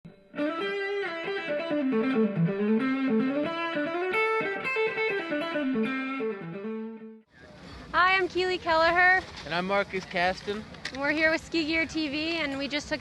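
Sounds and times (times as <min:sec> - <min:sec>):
electric guitar melody: 0:00.1 - 0:07.3.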